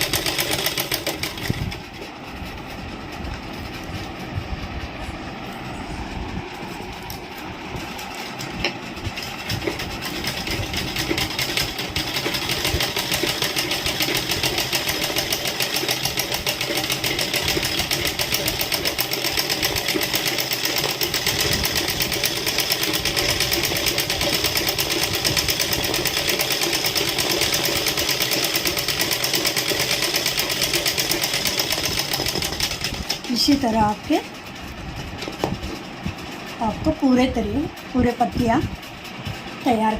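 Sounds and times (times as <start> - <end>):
sewing machine needle clatter: 0.0 - 1.7, 8.2 - 33.7.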